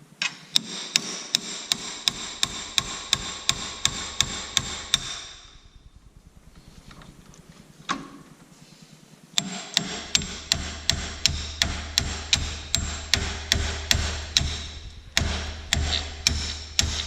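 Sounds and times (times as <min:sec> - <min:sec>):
hammer striking metal: 0:00.6 - 0:05.8, 0:09.4 - 0:17.0.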